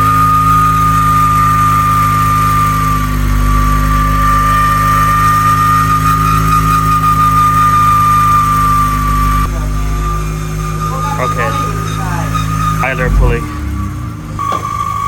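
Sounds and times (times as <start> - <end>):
high-pitched pulley whistle: 0.0 - 12.9
car engine idling: 8.9 - 15.0.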